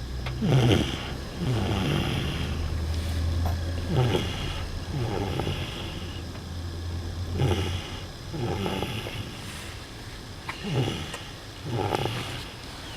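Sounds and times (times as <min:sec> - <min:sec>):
low steady hum: 0:00.0 - 0:12.9
person snoring: 0:00.4 - 0:02.8, 0:03.8 - 0:06.2, 0:07.3 - 0:09.6, 0:10.5 - 0:12.5.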